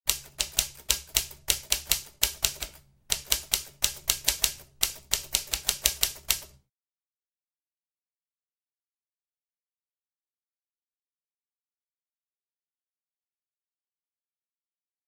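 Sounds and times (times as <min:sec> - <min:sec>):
typewriter keys clacking: 0:00.1 - 0:06.6.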